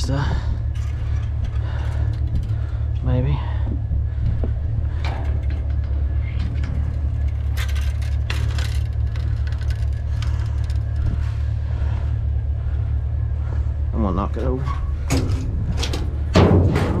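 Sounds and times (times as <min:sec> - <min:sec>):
vehicle engine rumbling: 0:00.0 - 0:17.0
junk scraping in dumpster: 0:14.7 - 0:17.0.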